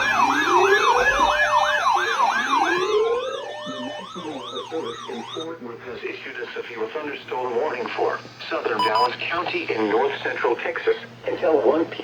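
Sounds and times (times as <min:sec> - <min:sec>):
rising siren wails: 0:00.0 - 0:05.5
warbling electronic siren: 0:00.0 - 0:05.5.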